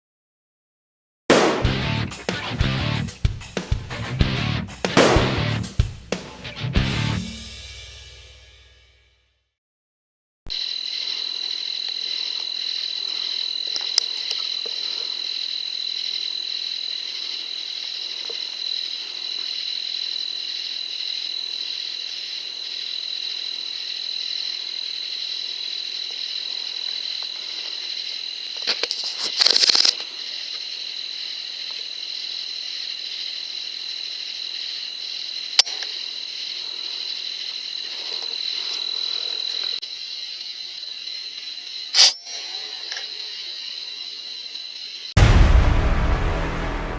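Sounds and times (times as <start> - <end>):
night insects trilling: 10.5 - 45.2
sharp click: 42.0 - 42.3.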